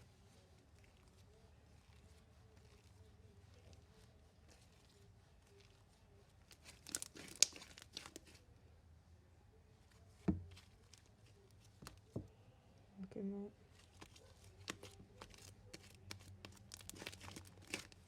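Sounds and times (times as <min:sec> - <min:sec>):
slime crackling and tearing: 0:06.5 - 0:08.4, 0:14.6 - 0:18.0.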